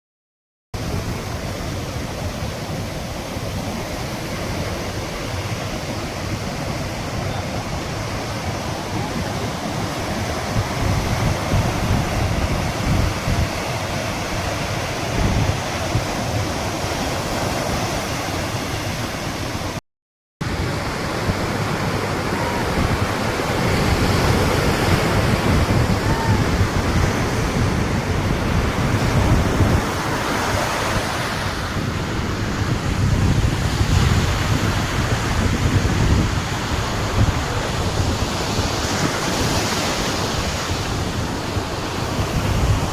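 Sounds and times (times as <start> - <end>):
sea waves breaking on beach: 0.8 - 19.8, 20.4 - 42.9.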